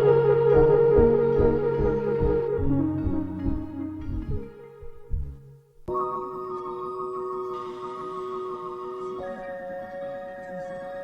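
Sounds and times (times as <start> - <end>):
ambient music with pulsing bass: 0.0 - 5.5.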